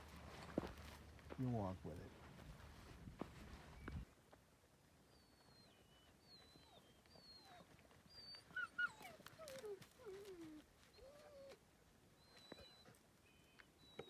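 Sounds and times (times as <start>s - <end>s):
puppy whimpering: 6.3s - 11.6s.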